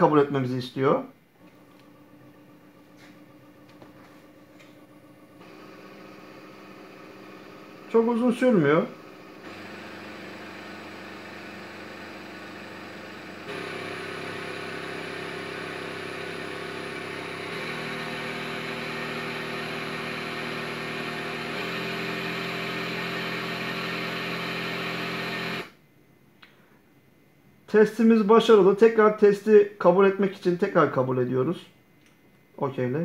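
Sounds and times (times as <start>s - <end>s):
pump motor hum: 1.4s - 25.8s.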